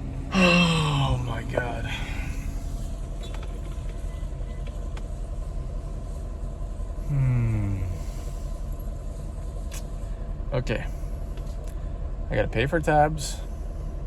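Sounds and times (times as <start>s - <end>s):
road traffic rumble: 0.0s - 14.0s
person groaning: 0.3s - 2.3s, 7.1s - 8.1s.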